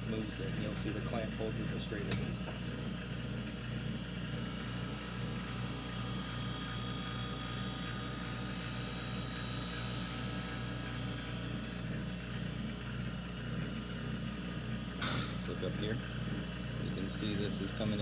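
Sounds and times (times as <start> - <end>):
blade grinding on wheel: 4.3 - 11.8
motor humming: 4.3 - 12.1.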